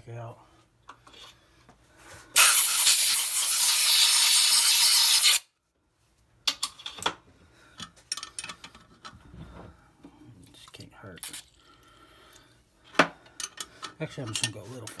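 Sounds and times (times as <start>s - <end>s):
compressed air blow gun hissing: 2.4s - 5.4s.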